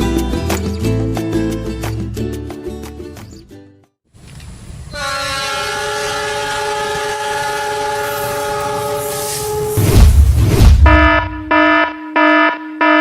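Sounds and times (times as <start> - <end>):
rumble of moving train: 4.2 - 11.4
train air horn blast: 4.9 - 10.0.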